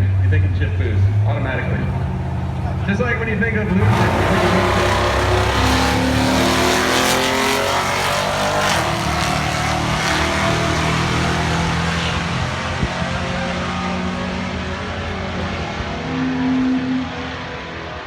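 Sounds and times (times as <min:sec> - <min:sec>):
drag racing engines: 0:00.0 - 0:18.0.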